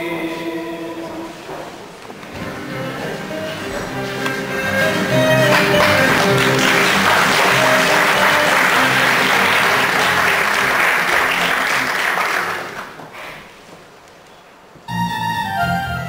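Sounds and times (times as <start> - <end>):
audience applauding: 2.5 - 13.0
faint instrumental music: 14.9 - 16.0.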